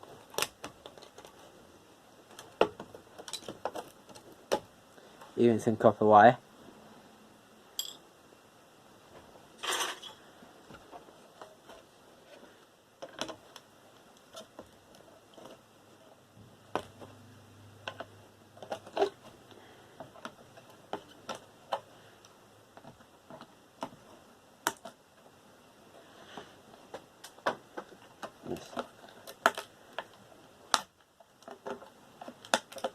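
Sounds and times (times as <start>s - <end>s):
faint low hum: 0.0s - 32.9s
computer parts clicking and knocking: 2.3s - 4.7s.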